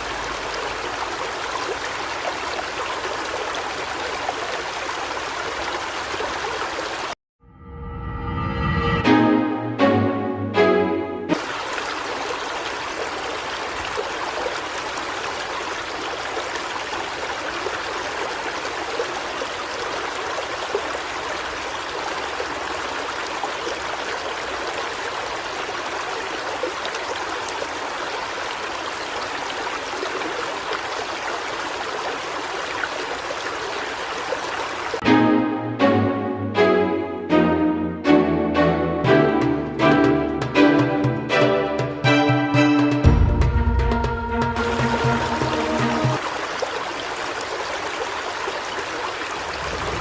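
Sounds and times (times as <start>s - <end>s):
stream flowing: 0.0s - 7.2s, 10.6s - 35.9s, 43.9s - 50.0s.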